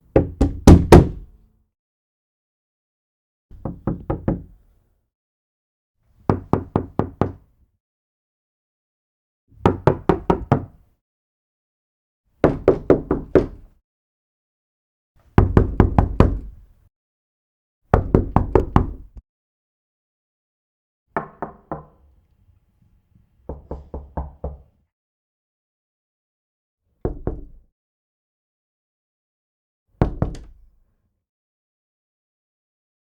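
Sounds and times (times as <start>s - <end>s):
knuckles knocking on door: 0.1s - 1.2s, 3.6s - 4.5s, 12.4s - 13.6s, 15.4s - 16.5s, 17.9s - 19.2s, 21.2s - 22.0s, 23.5s - 24.7s, 27.1s - 27.6s.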